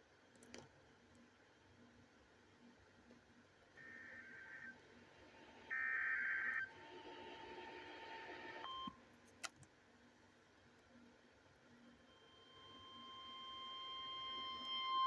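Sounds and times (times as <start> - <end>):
click: 0.3 - 1.2, 9.3 - 9.7.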